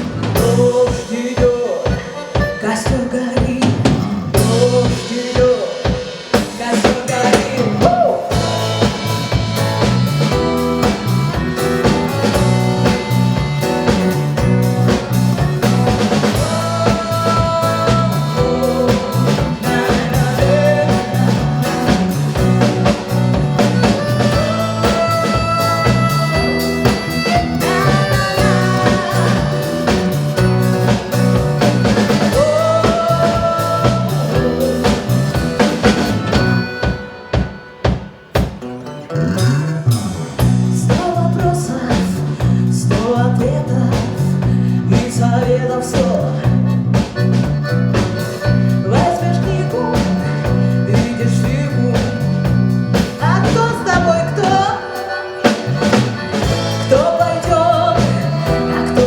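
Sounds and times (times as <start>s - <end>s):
bass guitar: 0.0s - 5.5s, 6.4s - 37.5s, 38.4s - 59.0s
drum kit beat: 0.0s - 38.8s, 39.4s - 59.0s
guitar: 0.0s - 59.0s
button accordion: 1.8s - 3.4s, 8.4s - 38.6s, 46.4s - 59.0s
pitch-bending melody line: 8.3s - 38.2s, 51.8s - 59.0s.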